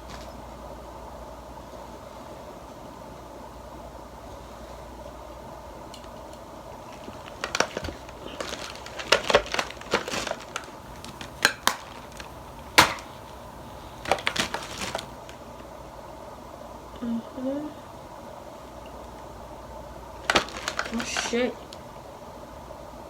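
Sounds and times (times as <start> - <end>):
small objects clicking and rustling: 5.9 - 15.2, 20.2 - 21.4
steady low hum: 10.8 - 15.2.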